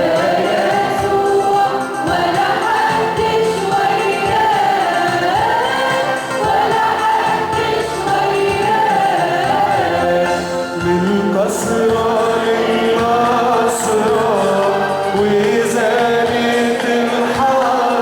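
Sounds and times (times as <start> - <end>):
musical accompaniment: 0.0 - 18.0
man singing a hymn: 9.6 - 18.0.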